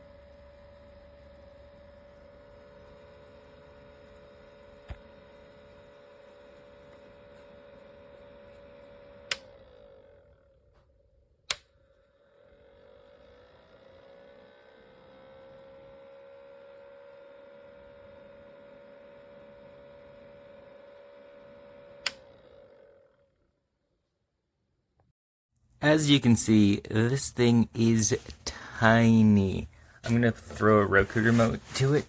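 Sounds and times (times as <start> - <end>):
humidifier humming: 0.0 - 9.8, 25.8 - 32.0.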